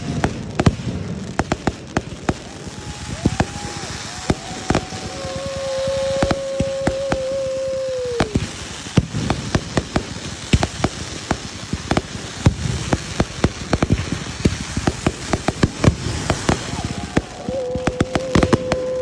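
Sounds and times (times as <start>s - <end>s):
firework whistle: 0.0s - 19.0s
fireworks crackling and banging: 0.0s - 19.0s.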